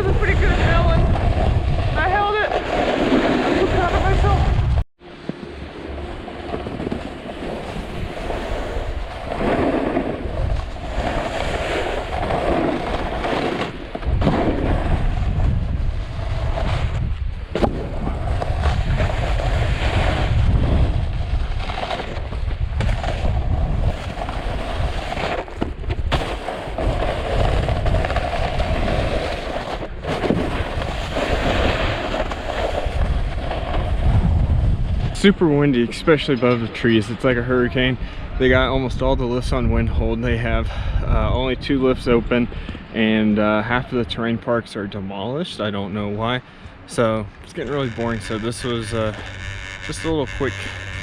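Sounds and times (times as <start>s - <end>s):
wind buffeting microphone: 0.0s - 4.8s, 5.5s - 29.2s, 29.9s - 43.0s
snowboard sliding over snow: 0.0s - 37.2s.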